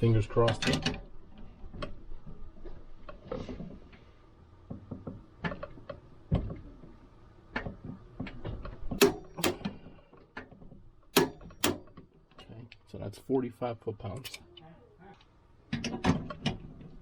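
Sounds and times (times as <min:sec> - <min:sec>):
ratchet clicking and knocking: 0:08.9 - 0:09.8, 0:11.1 - 0:12.0.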